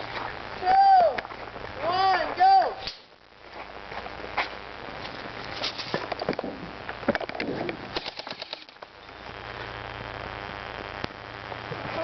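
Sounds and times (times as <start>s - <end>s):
low background noise: 0.0s - 12.0s.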